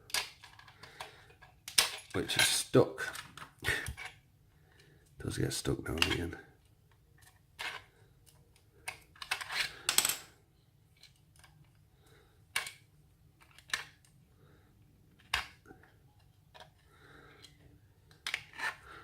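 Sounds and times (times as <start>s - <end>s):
metallic clicks of lock parts: 0.0s - 3.3s.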